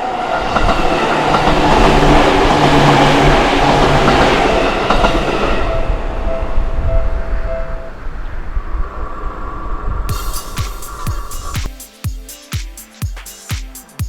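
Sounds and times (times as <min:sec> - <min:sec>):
low train hum: 0:00.0 - 0:11.7
two-tone crossing warning bell: 0:00.1 - 0:08.2.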